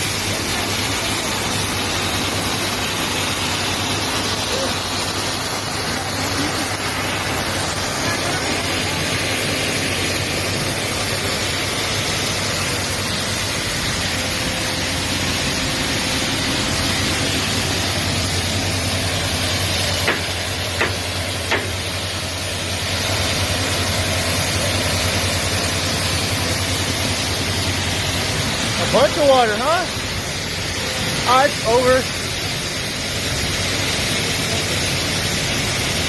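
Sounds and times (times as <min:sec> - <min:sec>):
rushing hiss: 0:00.0 - 0:36.0
sharp knocks: 0:20.0 - 0:21.8.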